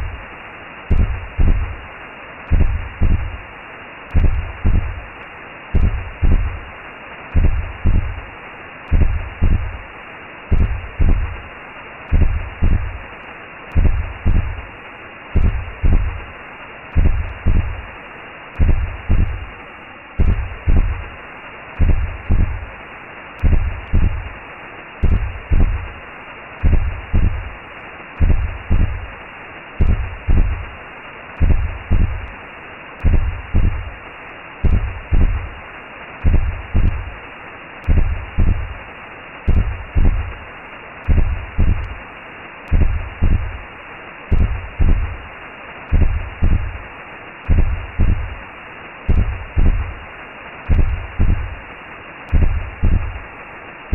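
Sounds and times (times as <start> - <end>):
heartbeat thumps: 0.0 - 0.2, 0.9 - 1.8, 2.5 - 3.4, 4.1 - 5.1, 5.8 - 6.7, 7.3 - 8.3, 8.9 - 9.8, 10.5 - 11.5, 12.1 - 13.0, 13.7 - 14.7, 15.4 - 16.3, 16.9 - 17.9, 18.6 - 19.5, 20.2 - 21.1, 21.8 - 22.7, 23.4 - 24.4, 25.0 - 26.0, 26.6 - 27.6, 28.2 - 29.1, 29.8 - 30.8, 31.4 - 32.3, 33.0 - 34.0, 34.6 - 35.6, 36.2 - 37.2, 37.8 - 38.8, 39.5 - 40.4, 41.0 - 42.0, 42.7 - 43.6, 44.3 - 45.2, 45.9 - 46.8, 47.5 - 48.4, 49.1 - 50.0, 50.7 - 51.6, 52.3 - 53.3
whooshing hiss: 0.0 - 53.9.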